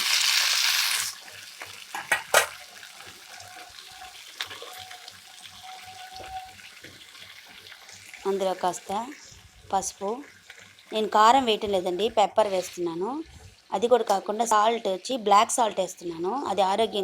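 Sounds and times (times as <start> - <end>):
vegetables sizzling in hot oil: 0.0 - 16.8
sharp knocks against pan: 1.9 - 2.6.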